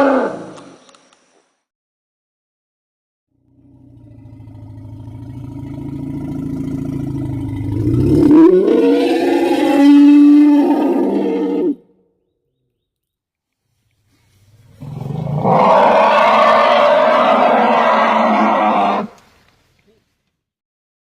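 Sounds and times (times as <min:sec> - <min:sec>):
animal growling and roaring: 0:00.0 - 0:00.6, 0:03.5 - 0:11.8, 0:14.6 - 0:19.2.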